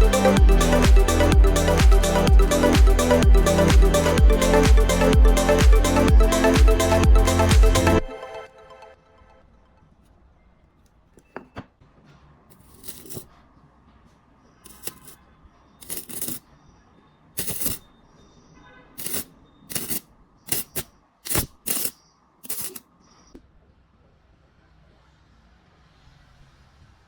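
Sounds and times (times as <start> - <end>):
welder sparking against metal: 17.4 - 17.8, 19.0 - 22.8.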